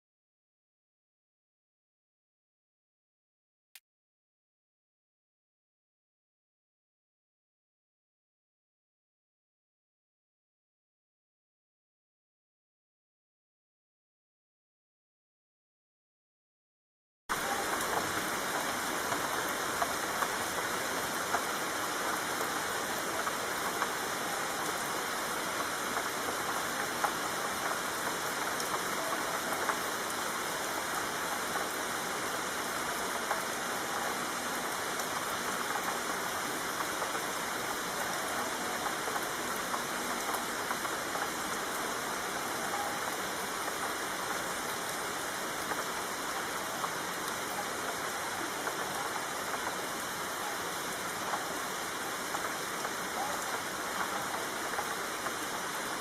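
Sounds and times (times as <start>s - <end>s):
steady rainfall: 17.3s - 56.0s.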